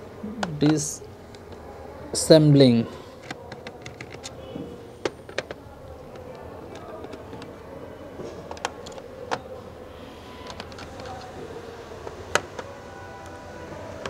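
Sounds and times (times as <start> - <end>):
clicks and taps of laptop disassembly: 5.0 - 7.6.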